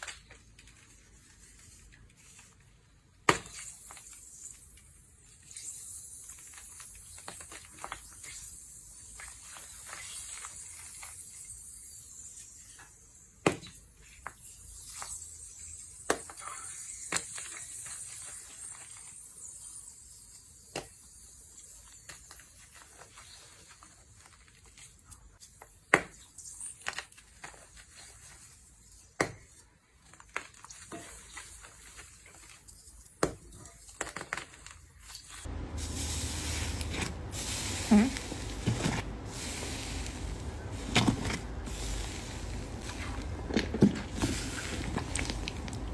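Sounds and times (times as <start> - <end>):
dense crackling: 35.5 - 45.9
faint hiss: 35.5 - 45.9.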